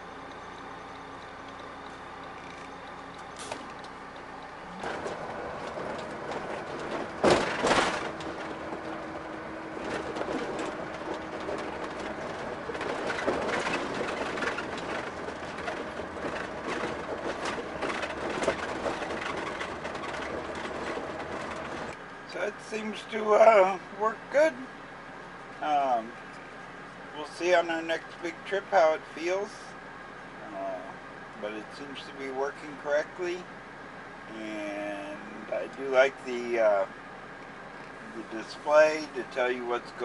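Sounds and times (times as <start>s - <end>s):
road and engine noise: 0.0s - 40.0s
rattles: 4.8s - 22.0s
loud knocks: 5.9s - 8.5s.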